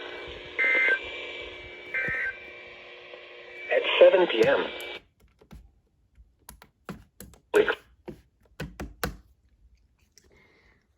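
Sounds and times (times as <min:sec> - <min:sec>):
sharp irregular clicks and taps: 0:05.2 - 0:07.6.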